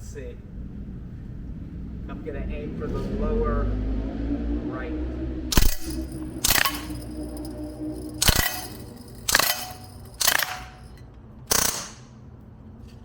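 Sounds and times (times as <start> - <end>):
bb gun shots: 8.2 - 10.8, 11.5 - 12.2.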